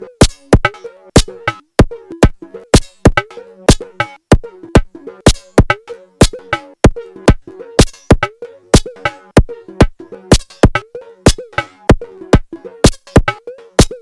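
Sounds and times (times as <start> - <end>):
electronic drum pattern: 0.0 - 14.0.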